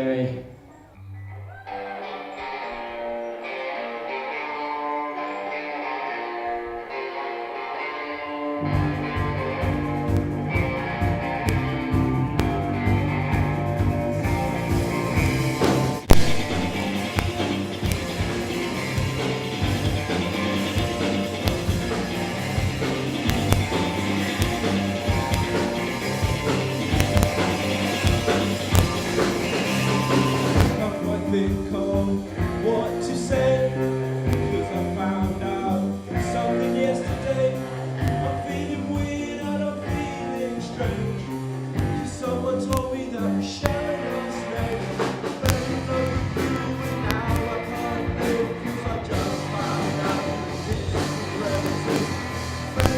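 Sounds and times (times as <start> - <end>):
rock band playing live: 1.7 - 52.9
person singing: 15.0 - 52.9.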